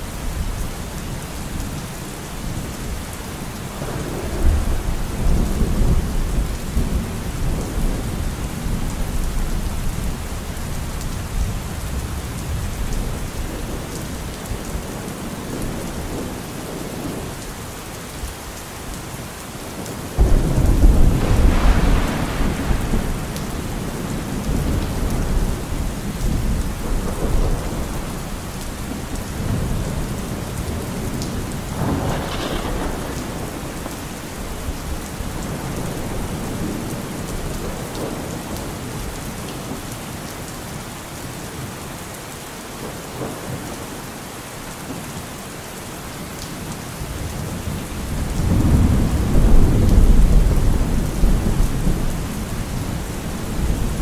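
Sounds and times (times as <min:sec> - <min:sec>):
steady rain: 0:00.0 - 0:54.0
thunder clap rumbling: 0:03.7 - 0:17.4, 0:19.8 - 0:39.1, 0:47.1 - 0:54.0.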